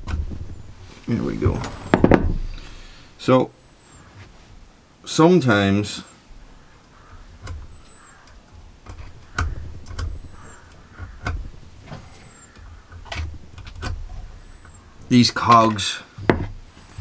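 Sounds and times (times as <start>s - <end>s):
metal parts clicking and knocking: 0.0s - 2.8s, 6.3s - 17.0s.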